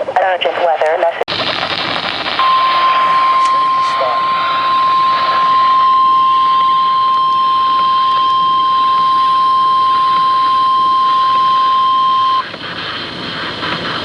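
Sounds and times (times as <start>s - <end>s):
radio hiss: 0.0s - 14.0s
steady high alarm beep: 2.4s - 12.5s.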